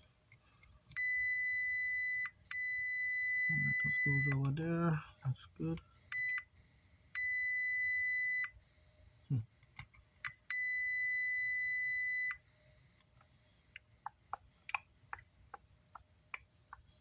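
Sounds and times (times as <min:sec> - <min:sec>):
multimeter high beeps: 0:01.0 - 0:05.0, 0:06.1 - 0:06.5, 0:07.2 - 0:08.6, 0:10.2 - 0:12.5.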